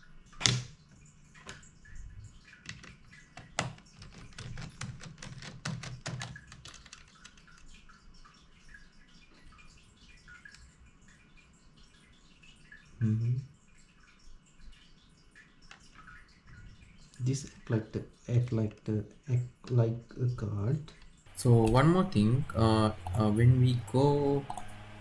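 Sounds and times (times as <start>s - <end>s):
small parts clicking and tapping: 2.6s - 8.0s.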